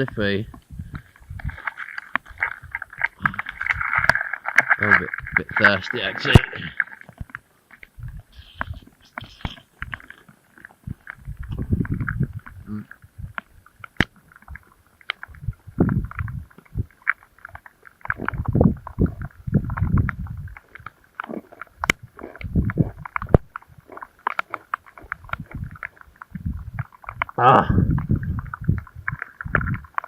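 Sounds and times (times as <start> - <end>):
handling rumbles and bumps: 0.0 - 17.2, 18.1 - 30.0
sharp clicks and crunches: 0.0 - 30.0.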